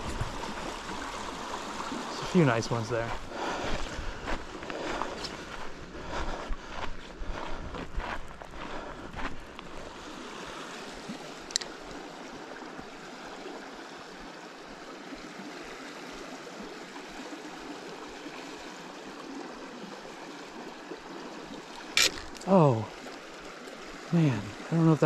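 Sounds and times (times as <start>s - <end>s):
river current rushing: 0.0s - 6.0s, 9.6s - 25.0s
sharp click: 22.0s - 22.3s.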